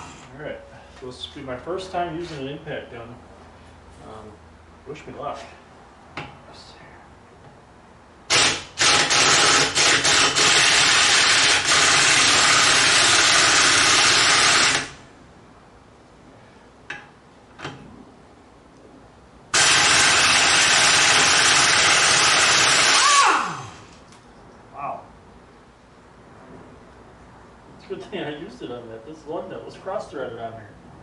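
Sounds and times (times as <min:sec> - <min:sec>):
pneumatic impact wrench hammering: 0:08.3 - 0:15.0, 0:19.5 - 0:23.9.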